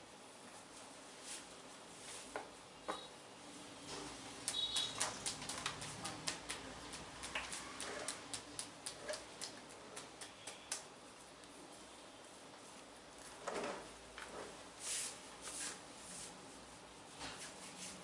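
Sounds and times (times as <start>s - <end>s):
rapid light massage tapping: 4.4s - 11.6s.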